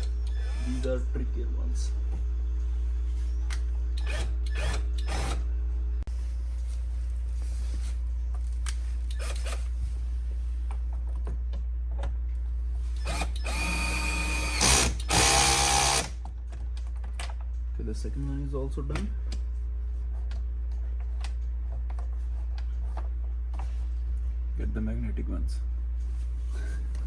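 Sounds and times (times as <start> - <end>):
cordless drill running: 4.1 - 5.4, 13.0 - 16.2.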